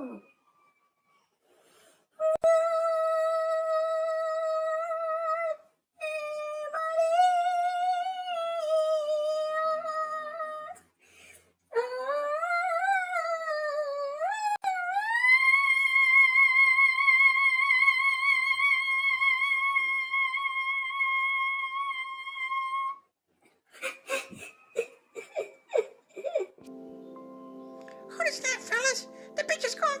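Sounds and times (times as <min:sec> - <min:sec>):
person singing wordless melody: 0:02.2 - 0:10.9, 0:26.7 - 0:30.0.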